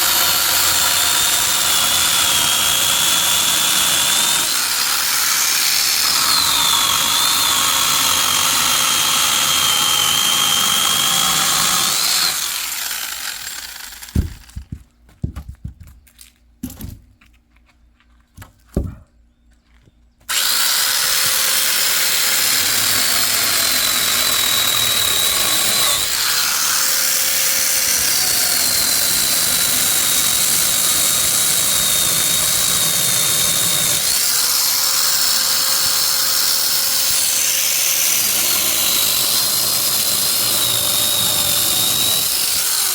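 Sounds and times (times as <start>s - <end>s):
power saw cutting wood: 0.0s - 14.6s, 20.3s - 42.9s
sharp knocks: 14.1s - 16.0s.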